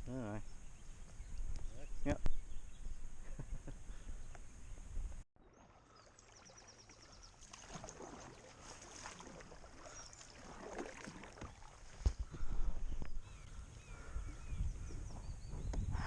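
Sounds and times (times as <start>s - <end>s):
paddle splashing in water: 5.4s - 12.5s.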